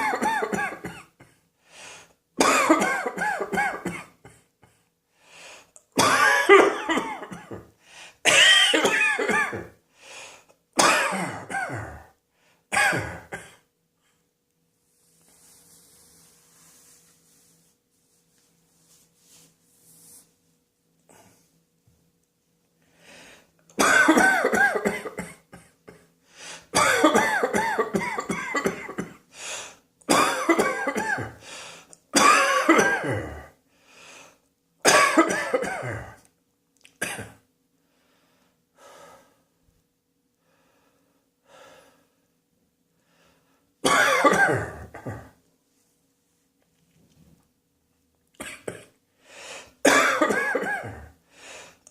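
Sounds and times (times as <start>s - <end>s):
person coughing: 0.0s - 1.4s, 2.4s - 4.8s, 6.0s - 9.8s, 10.8s - 13.7s, 23.7s - 29.2s, 30.1s - 31.4s, 32.1s - 33.6s, 34.8s - 36.3s, 36.9s - 37.4s, 43.8s - 45.4s, 48.4s - 49.0s, 49.8s - 51.2s
faint breaths: 5.1s - 5.8s, 7.8s - 8.2s, 9.9s - 10.6s, 22.8s - 23.6s, 49.2s - 49.8s, 51.2s - 51.9s.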